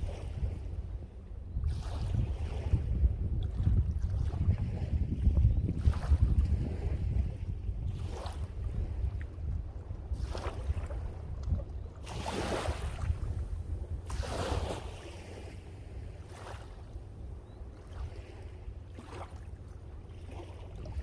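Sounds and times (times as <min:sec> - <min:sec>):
wind rumble on microphone: 0:00.0 - 0:21.0
sea waves washing in: 0:12.0 - 0:16.9.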